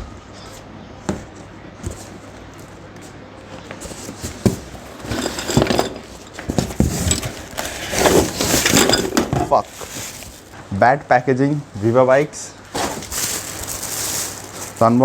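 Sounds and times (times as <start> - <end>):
wrap and cardboard rustling: 3.8 - 10.6, 12.7 - 15.0.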